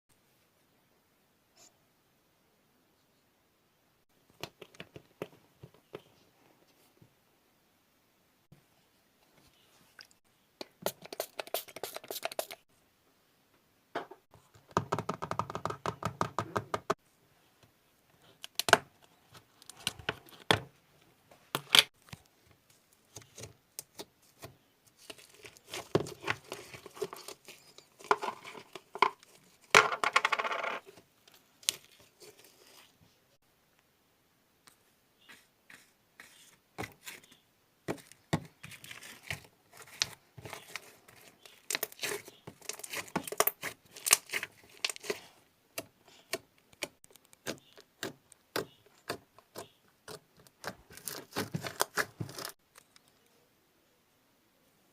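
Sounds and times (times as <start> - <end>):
packaging crackling and tearing: 38.6 - 45.4, 50.6 - 53.0.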